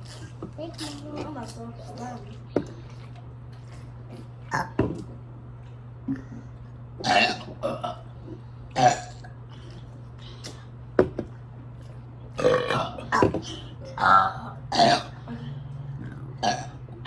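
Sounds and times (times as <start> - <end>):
low hum: 0.0 - 17.0
people burping: 4.1 - 5.0, 7.0 - 8.1, 8.7 - 9.4, 12.4 - 15.5, 16.4 - 17.0.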